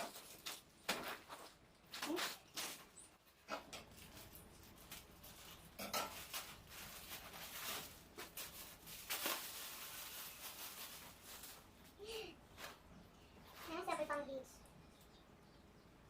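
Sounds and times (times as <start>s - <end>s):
parcel packaging rustling: 3.9s - 11.9s.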